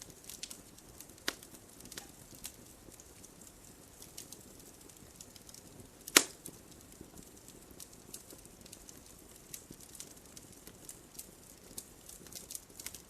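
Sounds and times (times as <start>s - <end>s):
wood fire crackling: 0.0s - 13.0s
loud sharp pop: 6.1s - 6.4s.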